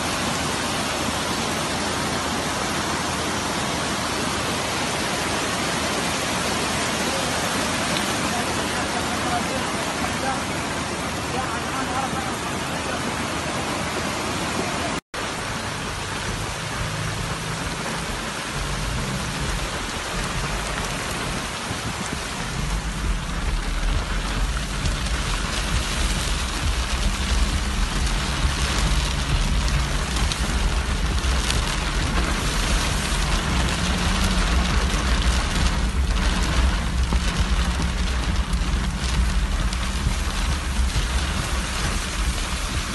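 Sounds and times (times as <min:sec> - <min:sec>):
rain pouring: 0:00.0 - 0:42.9
low rumble: 0:15.2 - 0:42.9.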